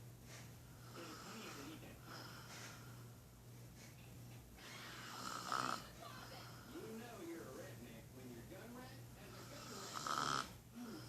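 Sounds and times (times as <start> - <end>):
steady low hum: 0.0 - 11.0
woman snoring: 0.9 - 2.4, 4.6 - 6.5, 9.4 - 11.0.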